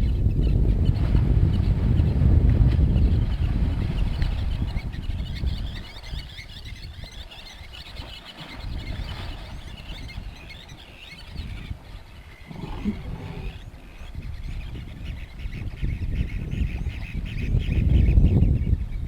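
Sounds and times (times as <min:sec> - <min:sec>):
small birds chirping: 0:02.8 - 0:19.0
low-pitched animal call: 0:12.4 - 0:13.7.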